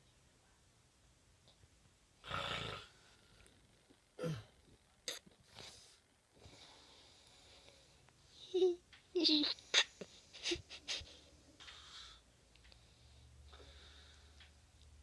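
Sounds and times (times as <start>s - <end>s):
person snoring: 2.2s - 3.1s
faint breathing: 5.5s - 8.5s, 11.0s - 14.7s.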